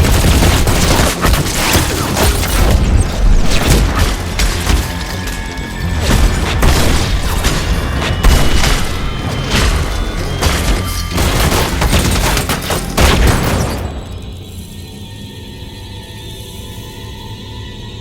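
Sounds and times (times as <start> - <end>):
heavy continuous gunfire: 0.0 - 14.5
background music: 0.0 - 18.0.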